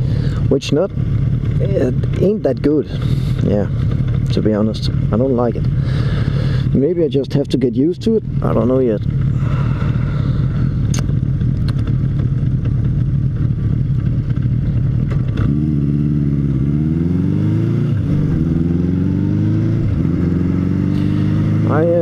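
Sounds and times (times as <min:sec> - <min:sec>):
motorcycle engine accelerating: 0:00.0 - 0:22.0.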